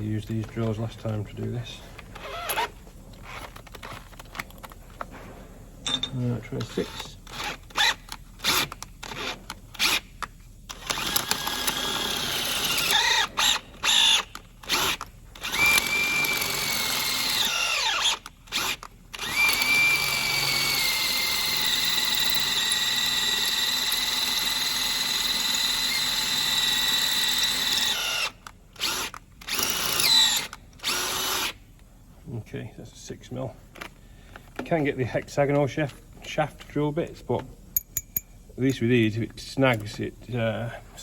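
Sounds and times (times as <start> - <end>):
power drill whining: 2.2 - 4.0, 10.7 - 31.6.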